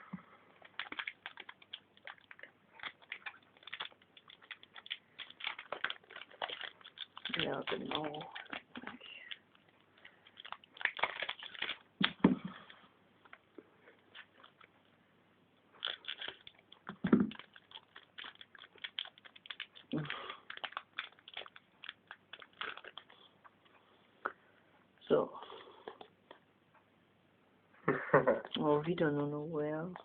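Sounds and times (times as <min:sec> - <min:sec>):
foil pack crinkling: 0:00.6 - 0:12.4, 0:14.0 - 0:14.8, 0:15.7 - 0:23.3.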